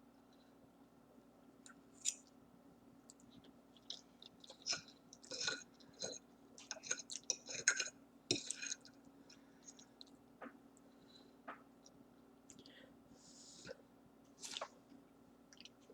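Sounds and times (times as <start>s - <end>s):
person chewing: 3.1s - 10.2s, 14.4s - 14.8s, 15.5s - 15.9s.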